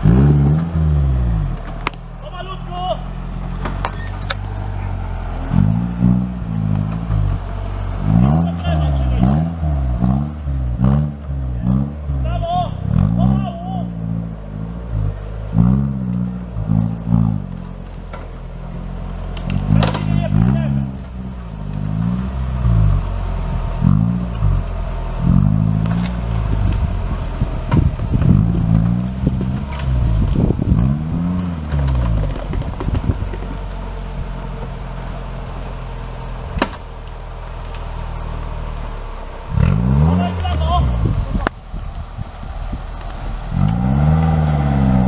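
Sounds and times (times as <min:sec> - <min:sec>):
engine revving in bursts: 0:00.0 - 0:45.0
sharp clatters: 0:15.0 - 0:41.7.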